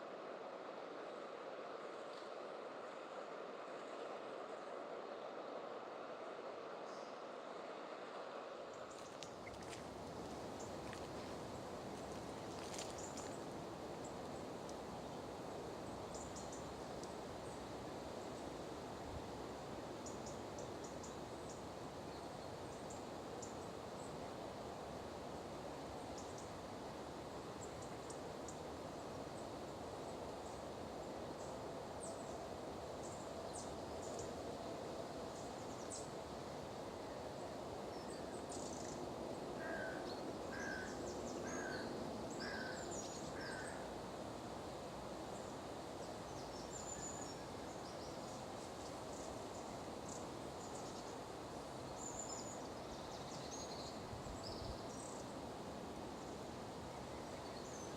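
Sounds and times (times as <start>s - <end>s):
wild birds calling: 39.6s - 43.8s.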